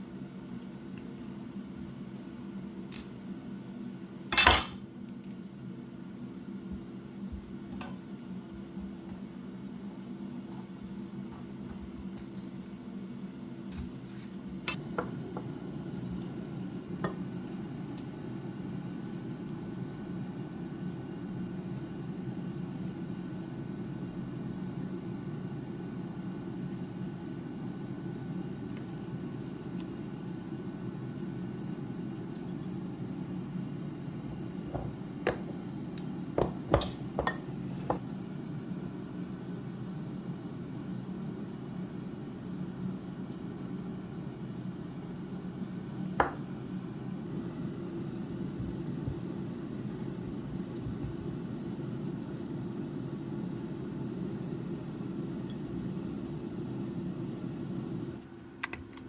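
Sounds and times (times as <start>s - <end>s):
steady low hum: 0.0s - 59.0s
dishes clinking: 4.3s - 4.8s.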